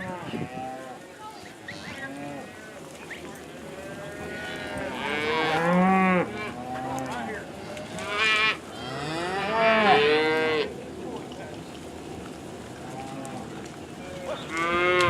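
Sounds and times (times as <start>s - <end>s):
cattle mooing: 0.0s - 1.0s, 3.7s - 10.7s, 12.7s - 15.0s.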